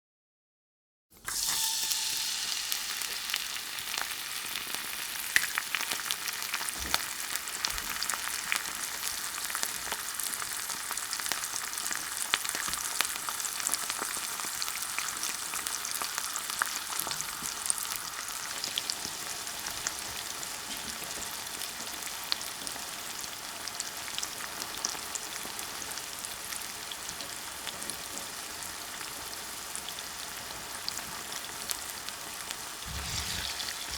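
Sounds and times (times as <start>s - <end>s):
food sizzling in a frying pan: 1.2s - 33.9s.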